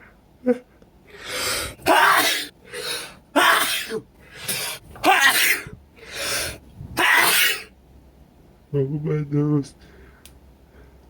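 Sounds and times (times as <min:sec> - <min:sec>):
sharp breath in: 0:01.1 - 0:01.8, 0:06.0 - 0:06.6
person sneezing: 0:01.5 - 0:07.7.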